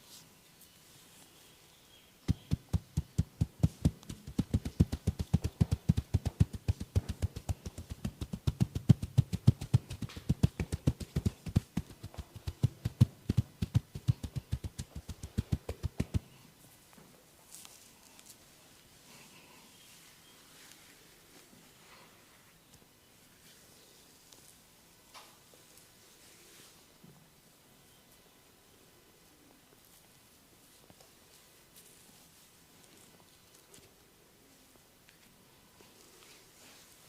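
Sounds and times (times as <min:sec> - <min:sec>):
percussive massage thumps: 0:02.3 - 0:16.3.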